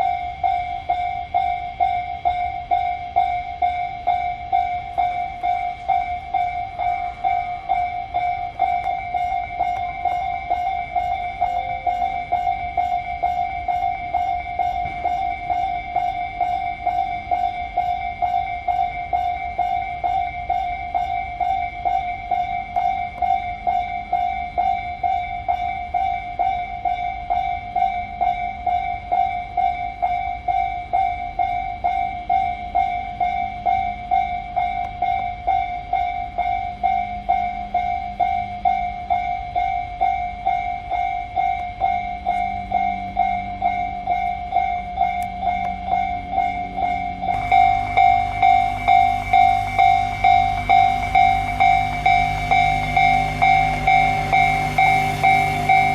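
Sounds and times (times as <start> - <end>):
level crossing warning bell: 0.0 - 55.9
train running noise: 0.0 - 55.9.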